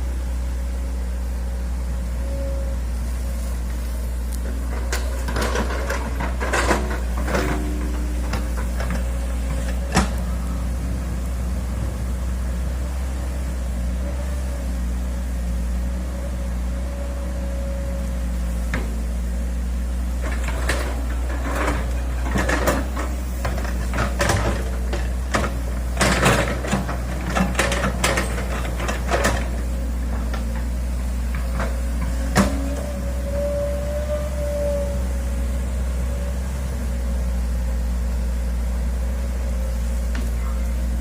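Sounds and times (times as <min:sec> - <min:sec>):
excavator diesel engine running: 0:00.0 - 0:41.0.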